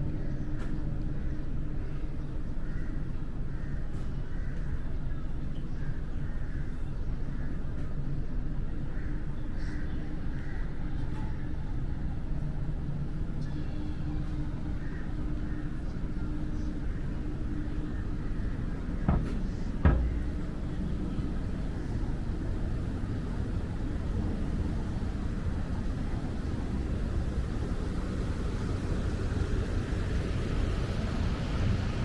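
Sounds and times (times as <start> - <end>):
faint steady hum: 0.0 - 32.0
wind buffeting microphone: 14.0 - 32.0
sharp knocks: 19.1 - 20.4.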